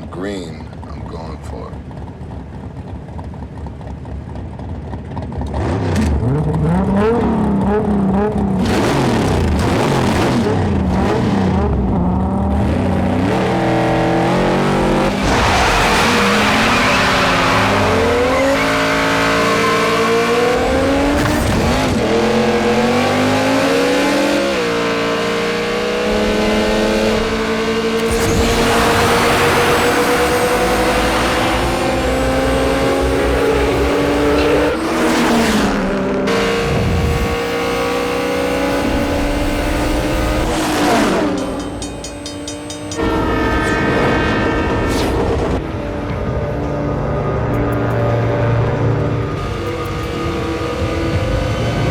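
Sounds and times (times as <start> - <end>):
racing car engines accelerating: 0.0 - 51.9
tires squealing: 12.7 - 45.7.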